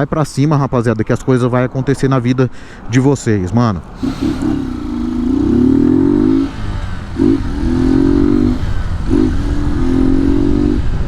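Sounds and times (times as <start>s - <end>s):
motorcycle engine accelerating: 4.0s - 11.0s.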